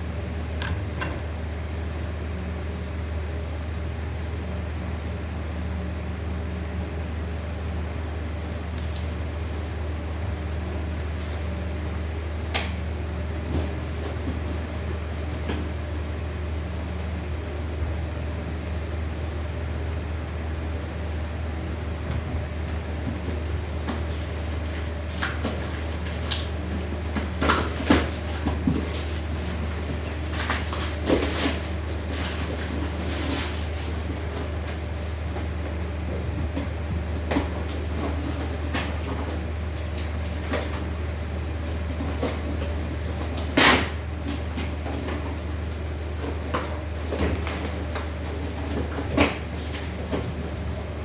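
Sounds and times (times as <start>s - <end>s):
steady low hum: 0.0s - 51.0s
parts and packaging clattering: 23.0s - 35.4s, 36.5s - 51.0s.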